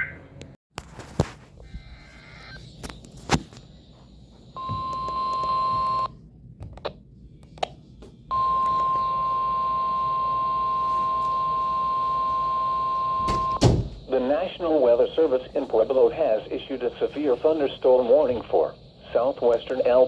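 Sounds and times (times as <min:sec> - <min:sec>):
high alarm beep: 0:04.6 - 0:06.1, 0:08.3 - 0:13.8.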